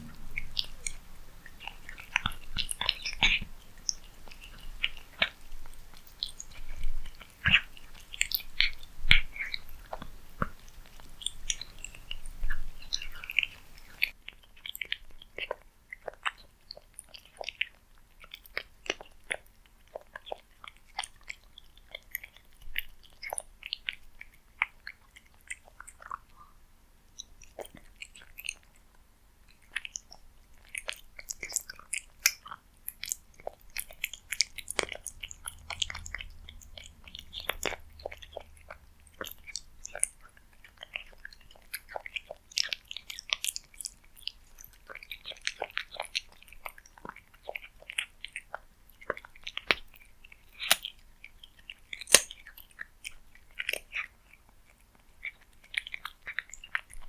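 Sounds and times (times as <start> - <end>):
cat chewing food: 0.0 - 57.0.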